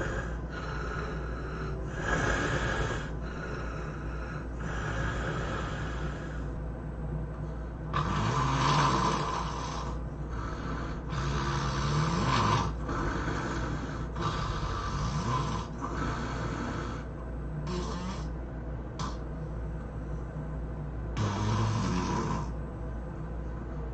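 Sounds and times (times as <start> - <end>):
person snoring: 0.0 - 6.6, 7.9 - 18.4, 21.2 - 22.6
soft breaths: 0.0 - 20.6.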